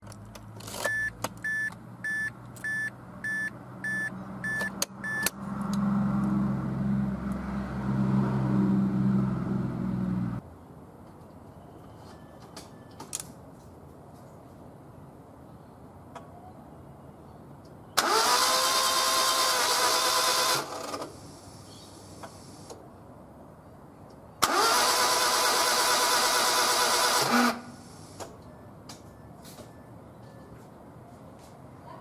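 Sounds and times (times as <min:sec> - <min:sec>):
car warning chime beeping: 0:00.9 - 0:05.4
starter cranking engine: 0:18.0 - 0:21.1, 0:24.4 - 0:27.6.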